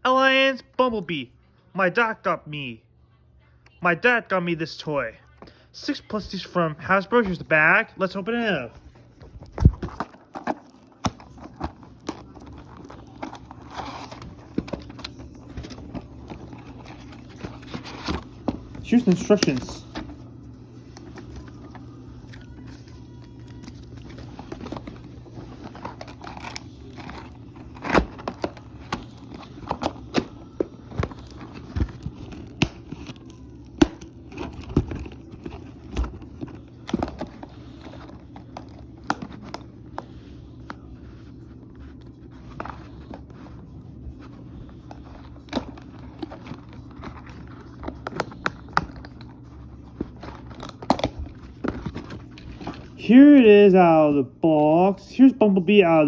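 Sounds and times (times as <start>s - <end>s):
steady low hum: 2.6s - 56.0s
packaging crinkling and tearing: 8.8s - 53.0s.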